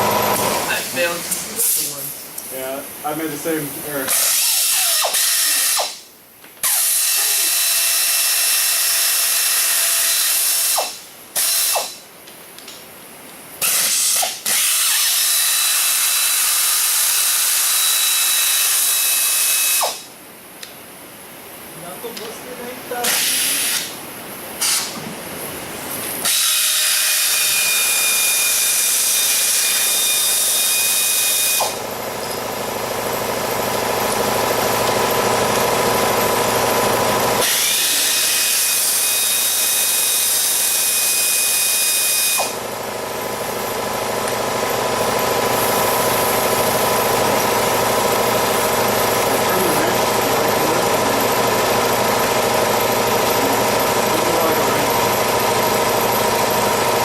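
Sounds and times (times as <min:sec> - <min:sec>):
power tool hissing whine: 0:03.1 - 0:12.0, 0:13.6 - 0:20.1, 0:22.9 - 0:24.0, 0:26.2 - 0:57.0
low machine hum: 0:42.6 - 0:57.0.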